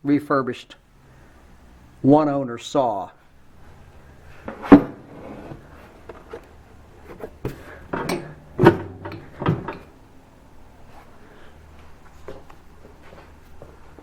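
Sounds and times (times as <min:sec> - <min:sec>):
metal panels clunking shut: 0:07.9 - 0:09.9.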